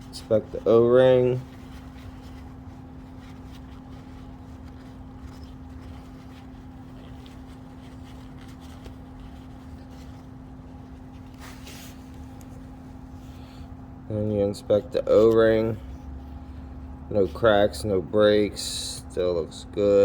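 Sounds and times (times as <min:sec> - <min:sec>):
short rustle: 0:00.0 - 0:13.7
low background hum: 0:00.0 - 0:20.0.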